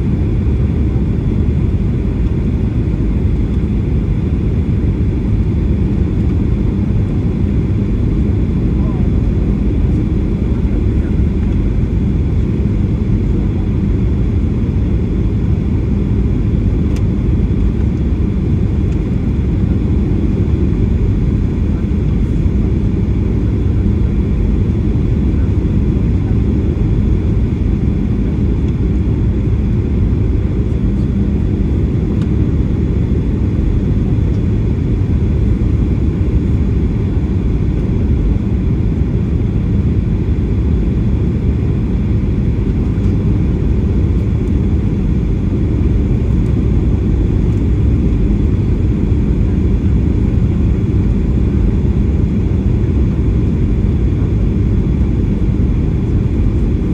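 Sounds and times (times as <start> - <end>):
aircraft cabin engine rumble: 0.0 - 56.9.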